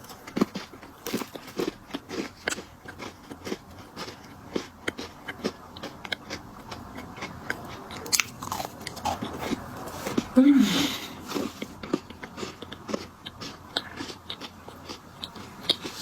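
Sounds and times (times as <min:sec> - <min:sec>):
person crunching biscuit: 0:00.0 - 0:16.0.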